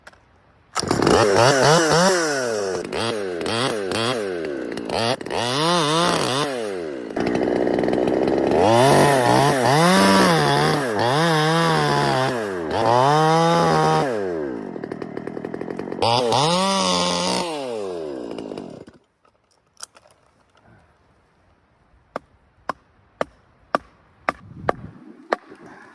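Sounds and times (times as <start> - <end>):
chainsaw revving: 0.8 - 19.0.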